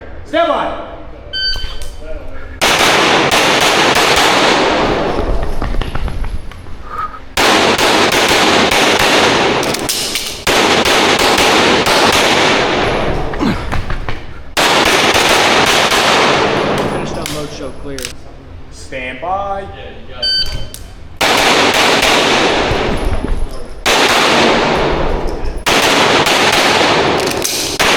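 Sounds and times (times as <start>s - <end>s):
rapid pistol fire: 2.6s - 5.4s, 7.4s - 13.1s, 14.5s - 16.8s, 21.2s - 23.0s, 23.8s - 27.9s.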